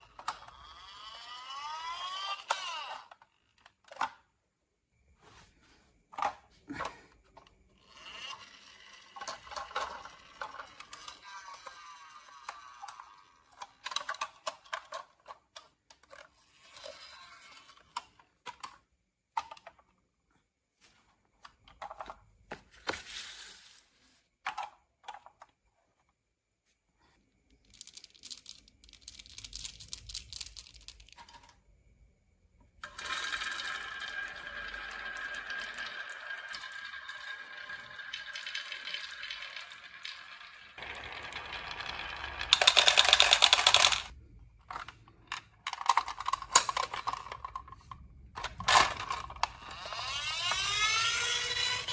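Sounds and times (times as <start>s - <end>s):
marbles rolling on wooden track: 0.1s - 3.7s, 7.8s - 15.2s, 16.0s - 18.7s, 27.5s - 31.6s, 32.8s - 51.9s
marbles clicking and knocking: 0.2s - 3.0s, 27.5s - 31.5s, 32.8s - 44.2s, 44.8s - 51.9s.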